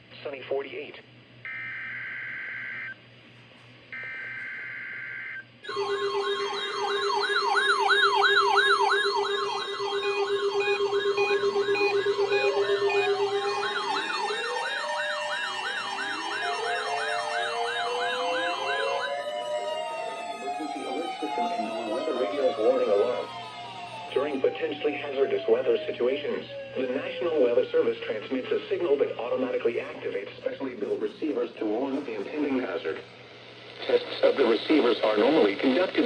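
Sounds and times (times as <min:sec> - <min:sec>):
steady low alarm tone: 0:01.4 - 0:03.0, 0:03.9 - 0:31.4
weather radio alarms warbling: 0:01.5 - 0:03.0, 0:04.0 - 0:30.2
two-tone digital data screech: 0:04.0 - 0:24.2.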